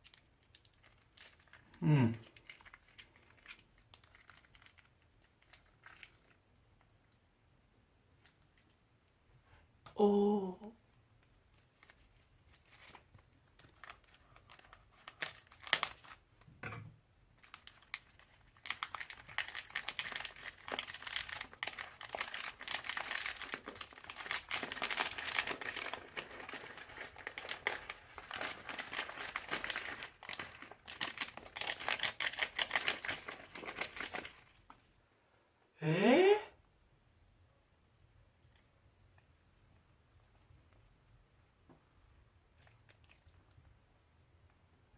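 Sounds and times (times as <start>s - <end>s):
crunchy slime crackling and popping: 0.0s - 6.4s, 11.8s - 16.3s, 17.4s - 34.7s.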